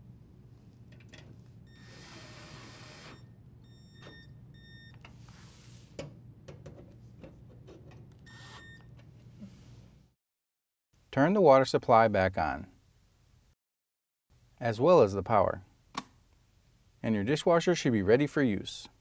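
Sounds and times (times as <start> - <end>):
drill driver whining: 1.7 - 3.4.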